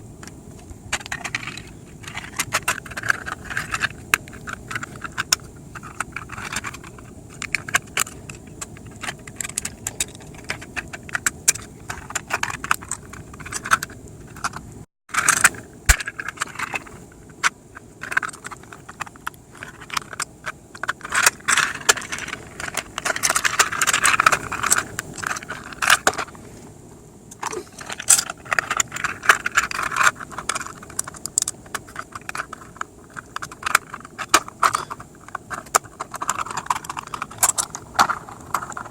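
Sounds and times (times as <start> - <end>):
plastic parts clicking and rattling: 0.2 - 26.4, 27.3 - 38.9.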